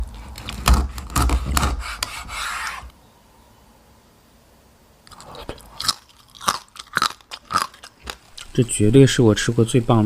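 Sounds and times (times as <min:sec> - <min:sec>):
knife rasping through crackling: 0:00.2 - 0:02.9.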